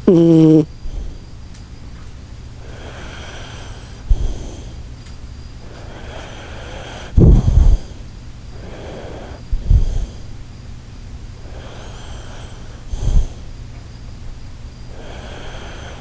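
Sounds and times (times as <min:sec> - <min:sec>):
soft breathing: 0:02.5 - 0:10.6, 0:11.2 - 0:14.2, 0:14.8 - 0:16.0
dog snoring: 0:05.7 - 0:08.0, 0:08.6 - 0:10.3, 0:11.5 - 0:13.5, 0:14.9 - 0:16.0.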